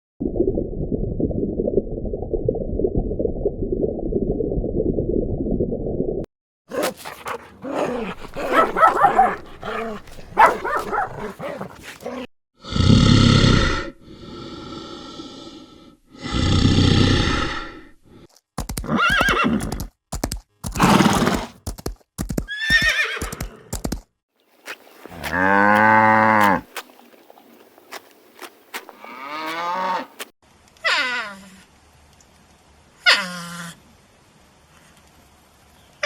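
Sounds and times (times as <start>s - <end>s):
horse breathy blasts: 6.7s - 12.3s, 18.6s - 24.0s
horse whinnying: 6.7s - 12.3s, 18.8s - 19.9s, 20.6s - 21.6s, 22.4s - 23.8s.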